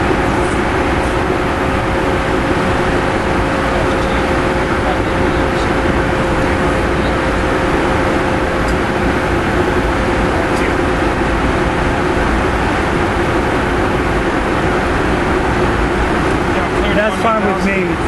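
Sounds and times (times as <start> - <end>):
airflow rush: 0.0 - 18.0
jet engine noise: 0.0 - 18.0
steady hum tones: 0.0 - 18.0.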